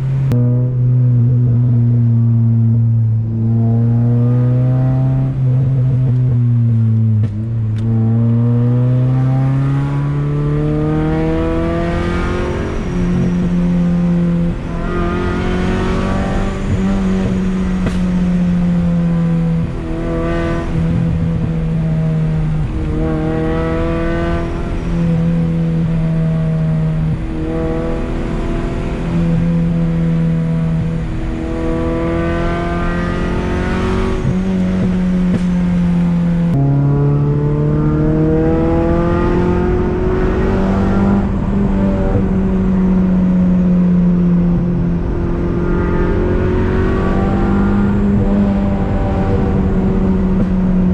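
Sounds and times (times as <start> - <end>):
car engine revving through gears: 0.0 - 50.9.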